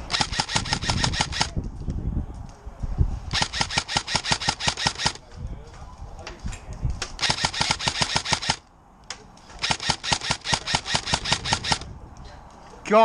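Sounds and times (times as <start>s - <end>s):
airsoft gun firing: 0.0s - 1.5s, 3.3s - 5.2s, 7.2s - 8.6s, 9.6s - 11.9s.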